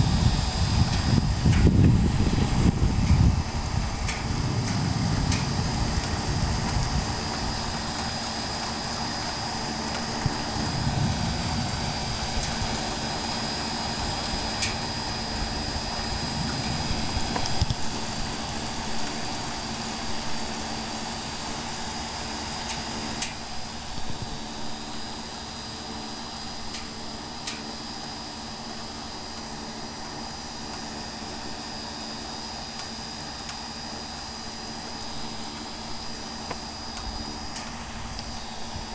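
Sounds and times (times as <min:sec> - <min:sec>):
distant thunder rumbling: 0:00.9 - 0:08.0, 0:10.2 - 0:13.3, 0:15.4 - 0:19.5.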